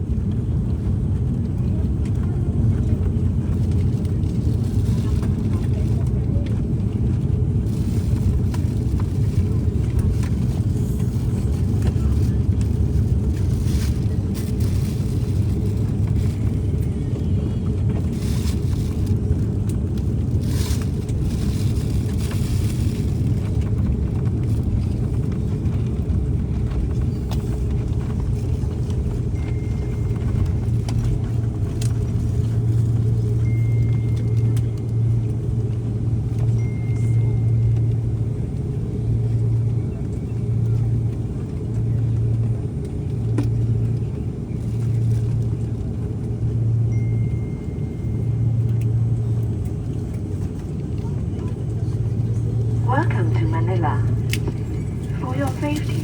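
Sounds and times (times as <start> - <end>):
airliner engine rumble: 0.0 - 56.0.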